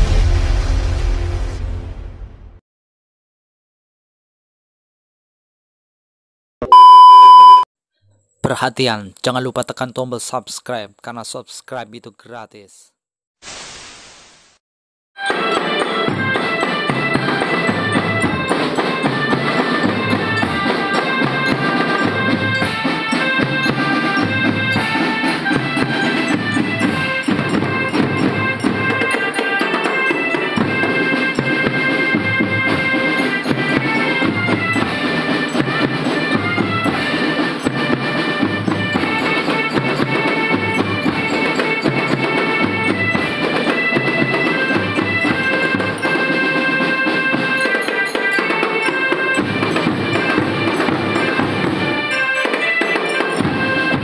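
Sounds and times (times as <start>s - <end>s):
wind instruments melody: 15.2s - 54.0s.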